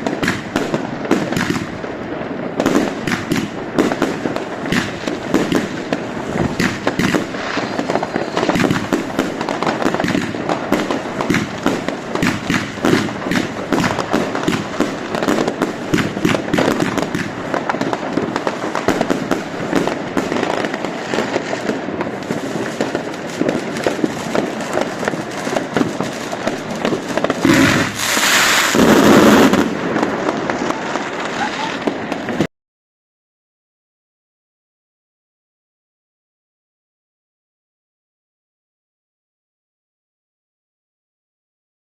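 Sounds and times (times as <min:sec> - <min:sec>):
fireworks bangs and crackles: 0:00.0 - 0:32.5
loud rushing hiss: 0:27.0 - 0:29.8.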